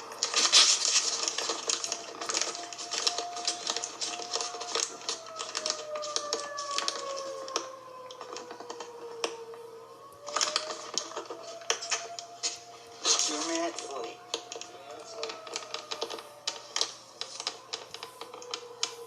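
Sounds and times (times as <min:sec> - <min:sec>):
warning siren: 0:00.0 - 0:19.0.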